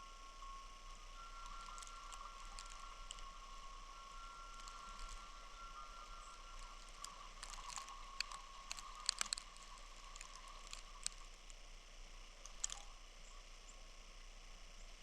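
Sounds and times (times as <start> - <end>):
soft snowstorm hiss: 0.0 - 15.0
sharp ticks: 1.2 - 11.6, 12.4 - 13.0.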